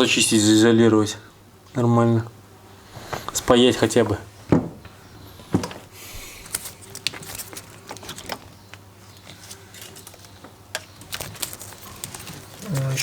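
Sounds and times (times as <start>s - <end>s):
hands handling wiring and connectors: 3.0s - 13.0s.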